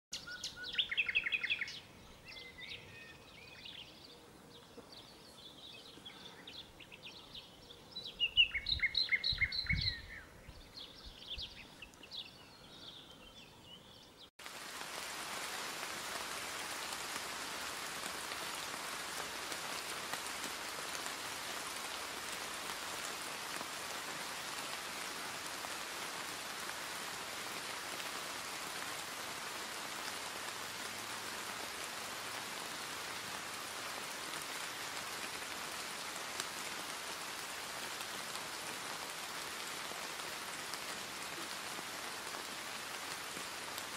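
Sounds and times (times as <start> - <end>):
rain hissing: 14.4 - 43.9.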